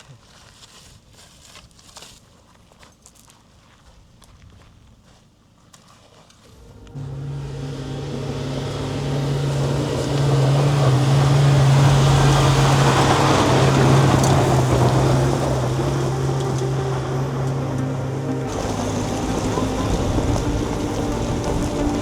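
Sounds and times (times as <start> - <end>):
wind and road noise: 6.4 - 22.0
truck engine running: 6.5 - 22.0.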